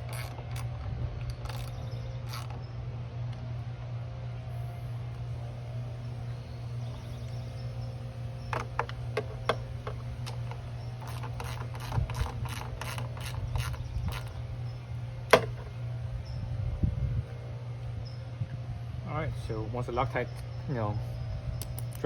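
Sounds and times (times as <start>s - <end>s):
low hum: 0.0s - 22.0s
ratchet wrench clicking: 8.5s - 14.4s.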